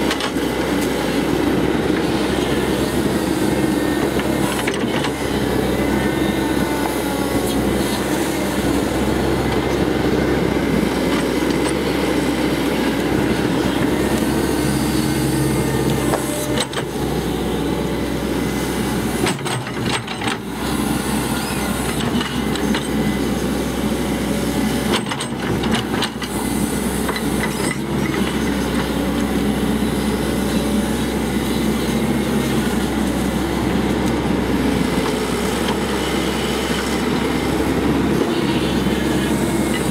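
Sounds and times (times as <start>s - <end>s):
excavator diesel engine running: 0.0s - 39.9s
excavator digging rumble and rattle: 0.0s - 39.9s.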